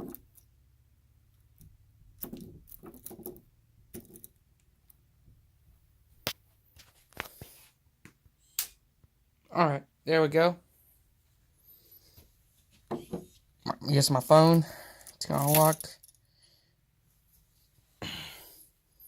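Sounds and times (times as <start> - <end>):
lock rattling and rustling: 2.2 - 4.4, 15.1 - 16.2.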